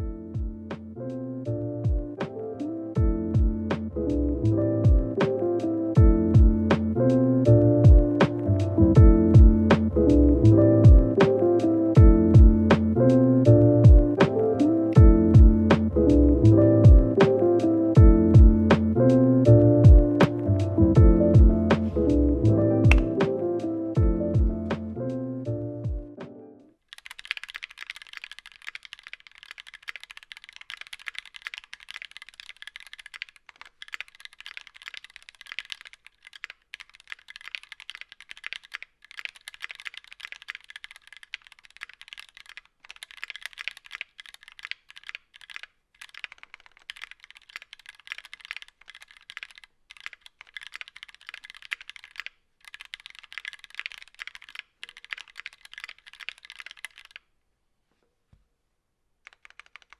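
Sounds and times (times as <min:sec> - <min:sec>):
typing on mechanical keyboard: 0:22.9 - 0:23.2, 0:26.9 - 0:57.3, 0:59.2 - 0:59.9.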